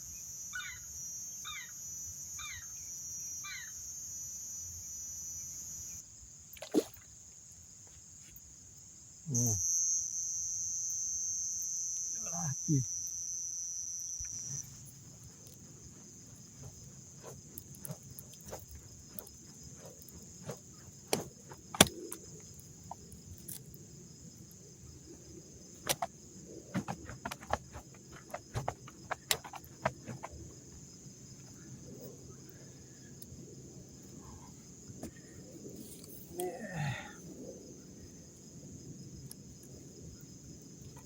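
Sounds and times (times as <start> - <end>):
crickets trilling: 0.0 - 41.0
sharp clicks and knocks: 26.8 - 30.4.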